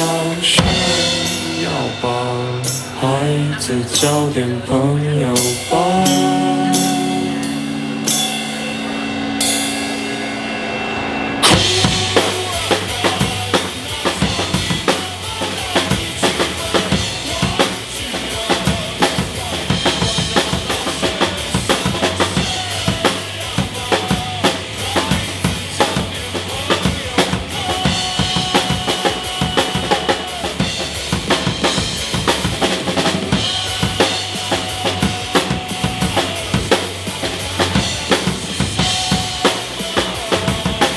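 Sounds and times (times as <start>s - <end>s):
drum kit fast beat: 0.0s - 10.8s, 11.4s - 40.9s
recorded rock music: 0.0s - 40.9s
cymbal hits ringing: 5.5s - 12.6s.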